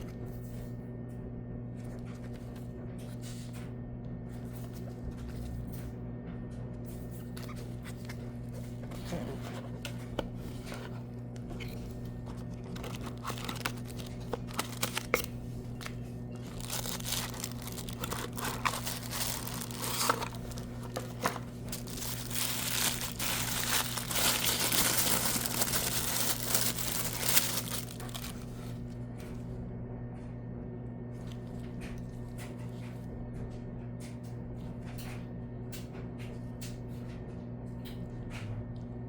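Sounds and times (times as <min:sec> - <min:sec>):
steady low hum: 0:00.0 - 0:39.0
packaging crinkling: 0:07.3 - 0:29.0.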